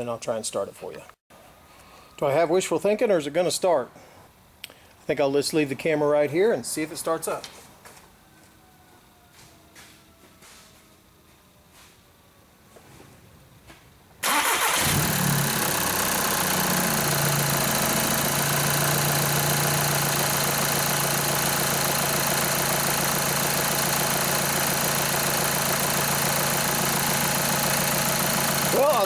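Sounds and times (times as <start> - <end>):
diesel engine starting and idling: 14.2 - 29.0.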